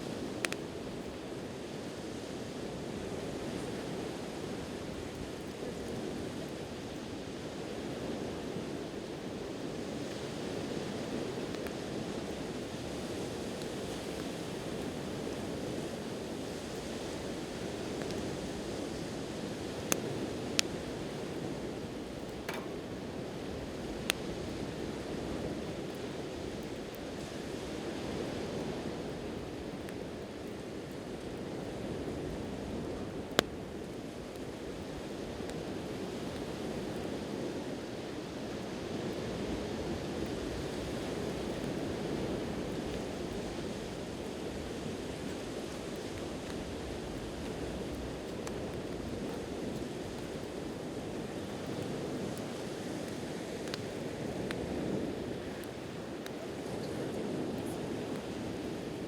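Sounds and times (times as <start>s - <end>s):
campfire crackling and popping: 0.0s - 2.0s, 2.7s - 37.4s, 38.3s - 59.0s
sea waves washing on shore: 39.8s - 59.0s.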